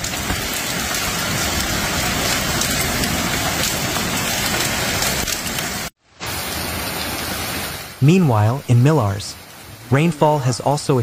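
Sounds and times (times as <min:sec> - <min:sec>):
heavy rain pounding: 0:00.0 - 0:11.0.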